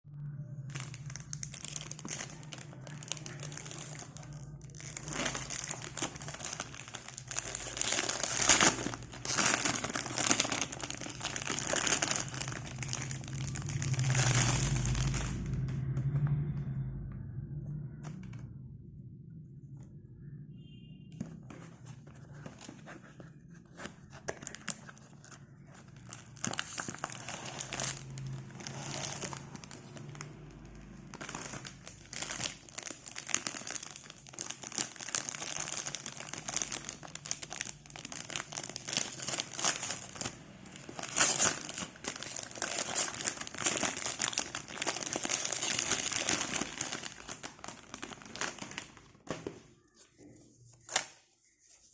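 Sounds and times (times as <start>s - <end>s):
packaging crinkling and tearing: 0.7s - 15.8s, 21.5s - 50.0s.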